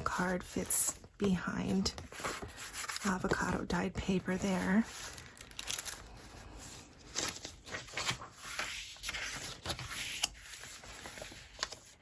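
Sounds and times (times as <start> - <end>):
paper rustling and sliding: 1.7 - 3.6, 4.4 - 12.0.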